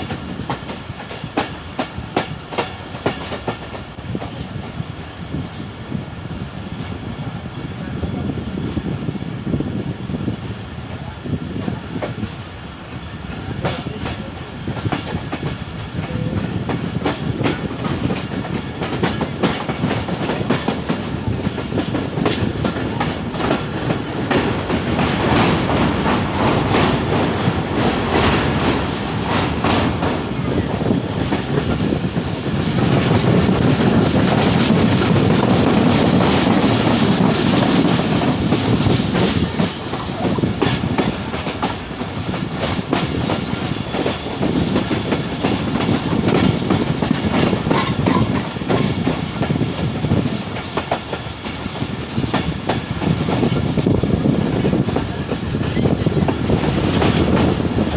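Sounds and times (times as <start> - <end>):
train carriages rumbling: 0.0 - 57.9
wheels clattering over rail joints: 13.4 - 57.9.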